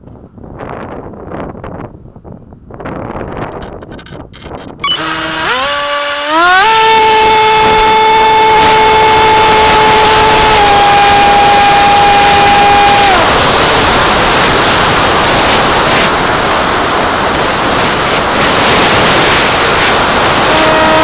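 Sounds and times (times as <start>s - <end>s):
motor high whine: 4.8s - 21.0s
loud rushing noise: 5.0s - 21.0s.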